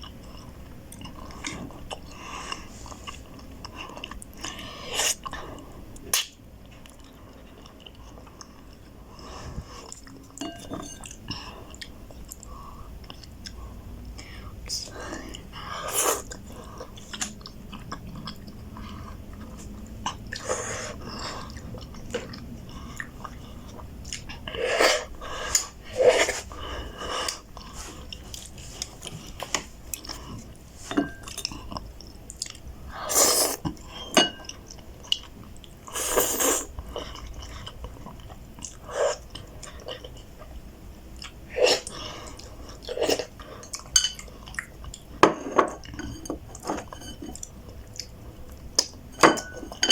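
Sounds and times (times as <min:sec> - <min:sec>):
cutlery clinking on bowl: 0:10.4 - 0:11.2, 0:34.0 - 0:34.5, 0:43.9 - 0:44.3, 0:45.2 - 0:47.4, 0:49.1 - 0:49.9.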